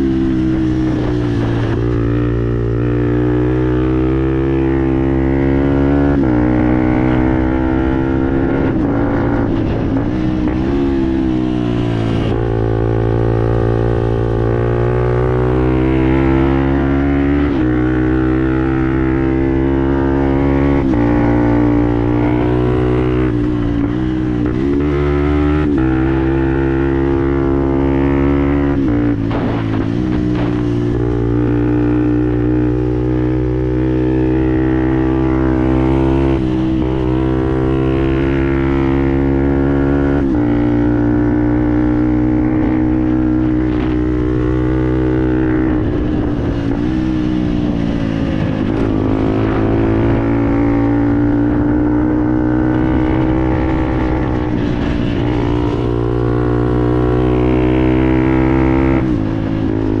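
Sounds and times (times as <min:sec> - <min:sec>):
motorcycle engine revving: 0:00.0 - 1:00.0.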